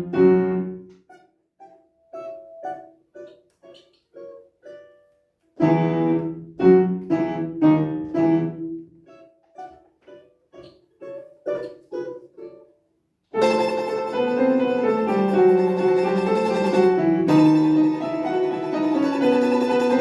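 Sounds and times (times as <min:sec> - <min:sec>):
piano playing: 0:00.0 - 0:01.0, 0:05.6 - 0:09.7, 0:13.4 - 0:20.0.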